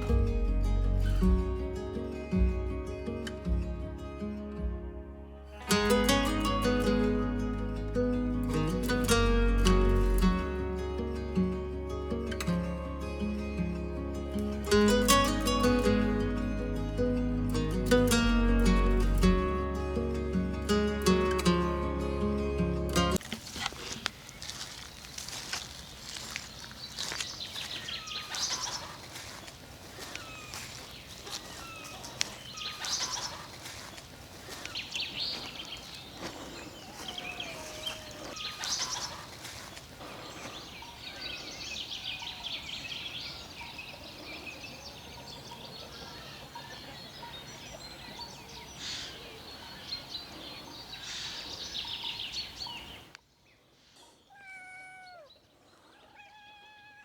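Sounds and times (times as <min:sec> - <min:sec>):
birds chirping and singing: 0:00.0 - 0:01.4, 0:23.5 - 0:56.2.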